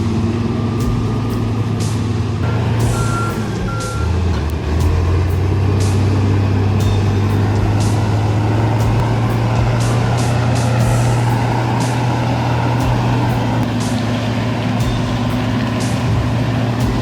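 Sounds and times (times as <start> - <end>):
diesel engine droning: 0.0 - 17.0
backup alarm beeps: 2.4 - 4.4.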